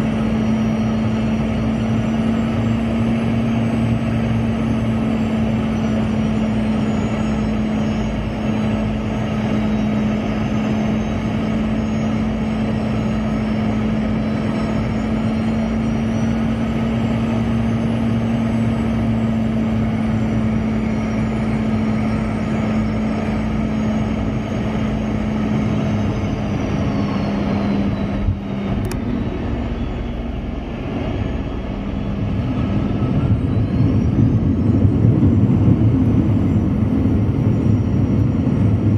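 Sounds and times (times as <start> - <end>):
high engine whine: 0.0 - 38.9
jet engines humming: 0.0 - 38.9
low rumble: 19.7 - 38.9.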